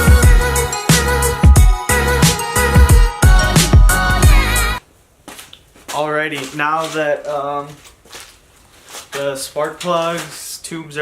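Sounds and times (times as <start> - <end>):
hip hop music with bass drum: 0.0 - 4.8.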